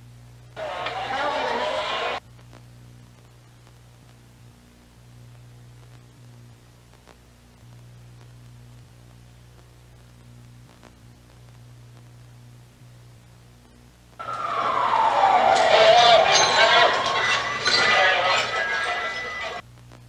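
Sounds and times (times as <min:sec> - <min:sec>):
low electrical hum: 0:00.0 - 0:20.0.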